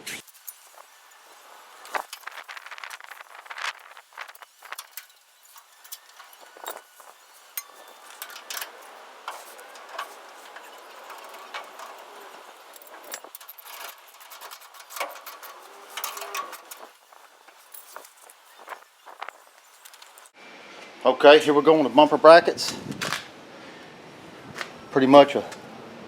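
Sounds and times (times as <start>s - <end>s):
metallic clinks of hand tools: 0.5s - 20.2s.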